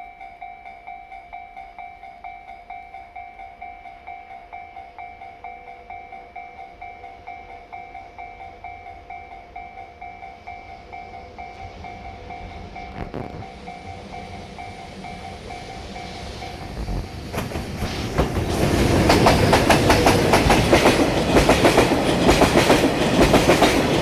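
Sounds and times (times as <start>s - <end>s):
level-crossing warning bell: 0.0s - 16.8s
freight train rumble: 3.2s - 24.0s.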